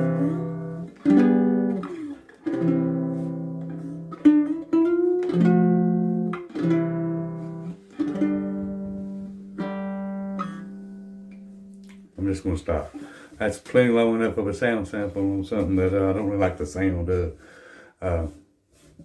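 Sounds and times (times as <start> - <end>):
baritone ukulele strummed chords: 0.0 - 12.8.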